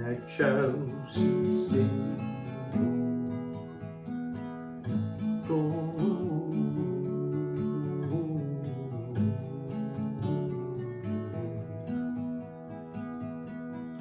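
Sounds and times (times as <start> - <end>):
instrumental carol with strummed chords: 0.0 - 14.0.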